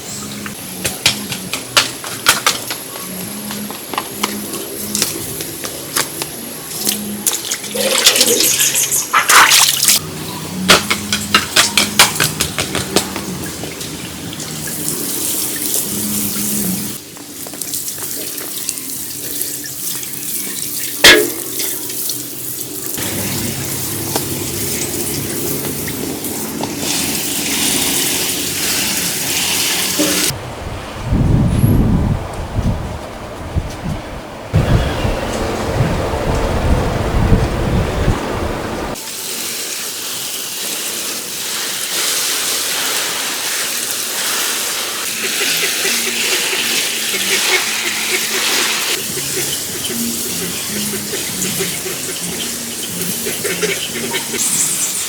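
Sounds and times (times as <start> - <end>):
running and splashing water: 13.0 - 30.4, 34.6 - 55.0.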